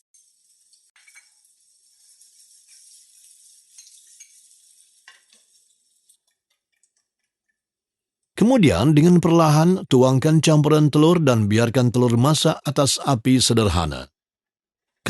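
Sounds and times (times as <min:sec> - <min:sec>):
utensil scraping pan: 0:00.0 - 0:06.7
onions frying in oil: 0:00.0 - 0:07.5.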